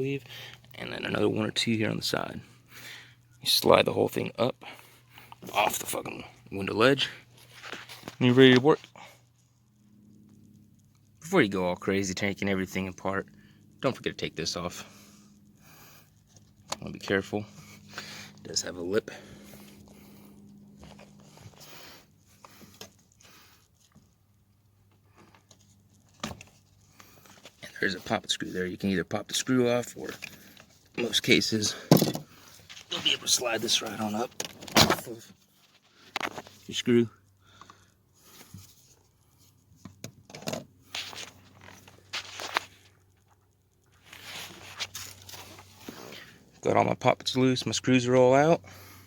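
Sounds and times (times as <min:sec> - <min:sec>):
light rustle: 0:40.8 - 0:46.4.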